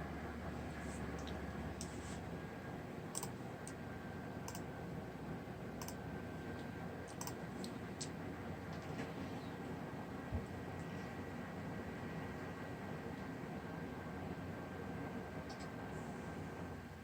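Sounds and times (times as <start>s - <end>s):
steady low hum: 0.0s - 17.0s
mouse and keyboard clicks: 3.1s - 3.3s.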